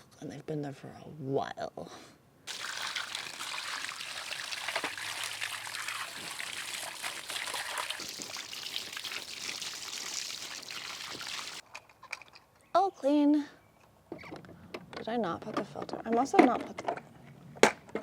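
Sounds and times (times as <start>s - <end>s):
water pouring and splashing: 2.5s - 11.6s.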